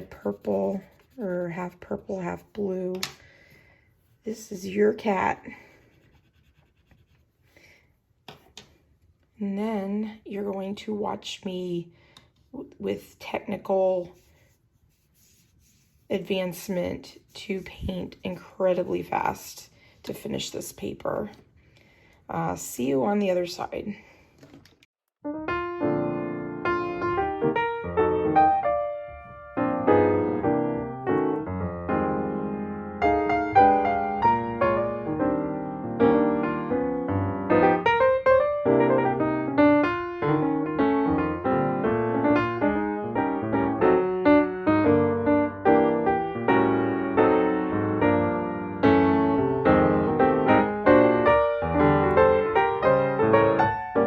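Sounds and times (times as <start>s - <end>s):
piano music: 25.2s - 54.0s.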